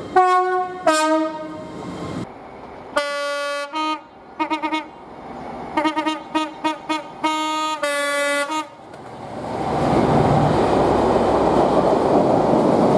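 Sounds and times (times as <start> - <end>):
train passing rumble: 0.0 - 12.9
train horn toots and blasts: 0.2 - 1.7, 3.0 - 5.0, 5.8 - 8.8.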